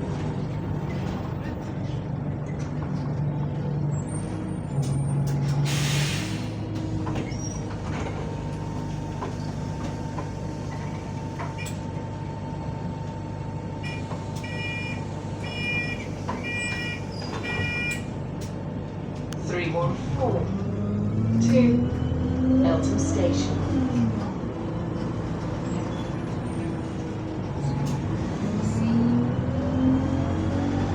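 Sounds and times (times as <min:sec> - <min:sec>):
bus engine running: 0:00.0 - 0:30.9
short electronic beeps: 0:13.8 - 0:18.1.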